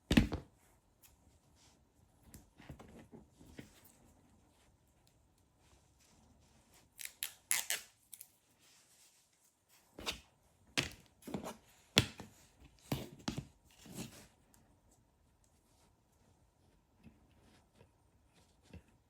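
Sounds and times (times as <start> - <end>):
tape snipping and crackling: 7.0 - 8.3.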